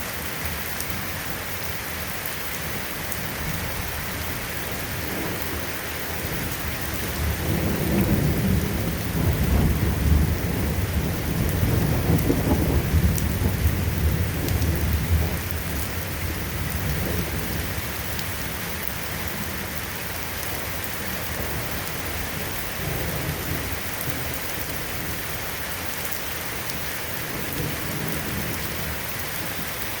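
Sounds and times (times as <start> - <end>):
steady rain falling: 0.0 - 30.0
thunder rumbling: 3.2 - 18.4.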